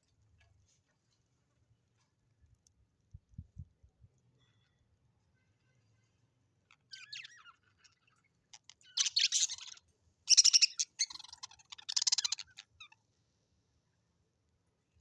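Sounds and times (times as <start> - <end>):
bird chirp: 5.9 - 13.0
birds scratchy chattering calls: 8.8 - 12.7.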